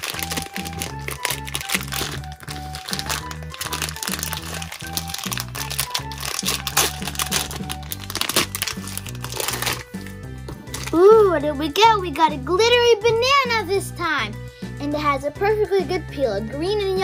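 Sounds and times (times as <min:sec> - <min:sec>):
wrapper crinkling and tearing: 0:00.0 - 0:11.2
background music with bass line: 0:00.0 - 0:17.0.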